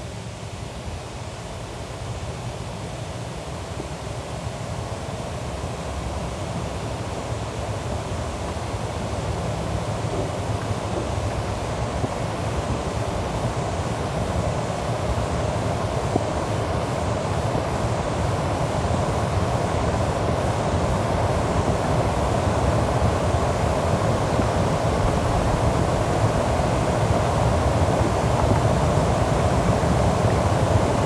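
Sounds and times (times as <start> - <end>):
static noise music: 9.8 - 31.0.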